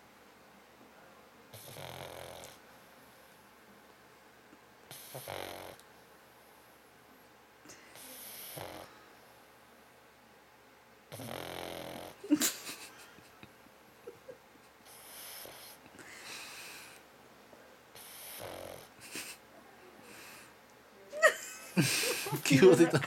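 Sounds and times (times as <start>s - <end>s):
dog snoring: 1.5s - 2.6s, 4.9s - 5.8s, 8.0s - 8.9s, 11.1s - 12.2s, 14.9s - 15.8s, 18.0s - 18.9s
dog snorting: 18.0s - 18.9s.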